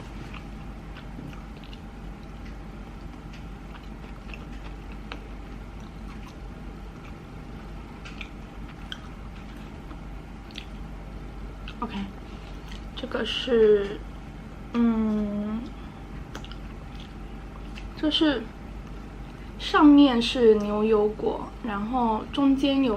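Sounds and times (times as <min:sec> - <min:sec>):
person chewing: 0:00.0 - 0:13.0, 0:16.2 - 0:18.0
background hum: 0:00.0 - 0:22.9.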